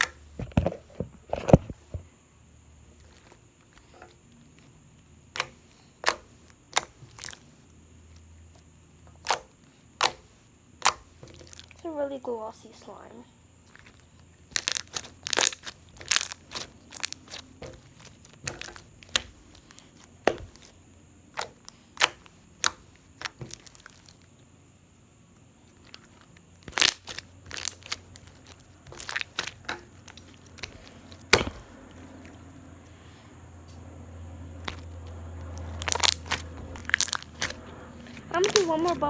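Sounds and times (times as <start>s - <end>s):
slime clicking and popping: 5.3s - 7.5s, 9.2s - 11.8s, 13.7s - 24.3s, 25.8s - 32.4s, 34.6s - 39.0s.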